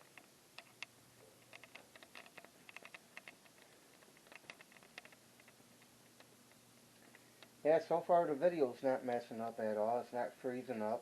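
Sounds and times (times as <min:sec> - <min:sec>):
faint small clicks and taps: 0:00.0 - 0:07.6.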